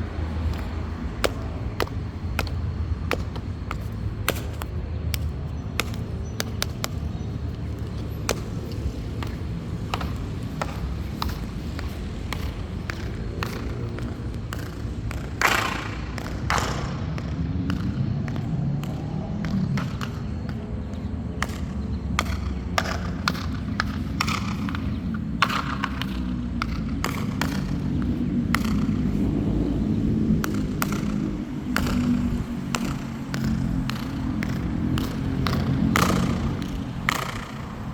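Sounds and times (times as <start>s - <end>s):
high heels clicking on hard floor: 0.0s - 14.9s
steady low rumble: 0.0s - 25.6s.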